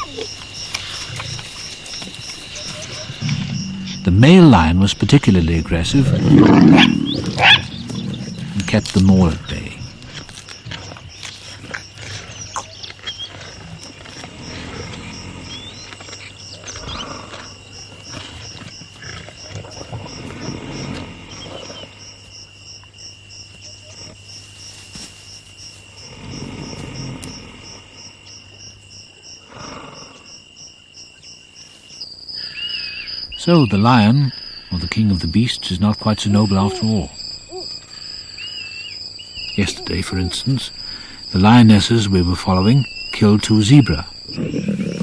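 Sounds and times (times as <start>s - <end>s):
lions growling and snarling: 0.0s - 4.7s, 5.3s - 22.2s, 26.0s - 28.0s, 29.4s - 30.4s, 39.4s - 45.0s
insect chirping: 0.0s - 45.0s.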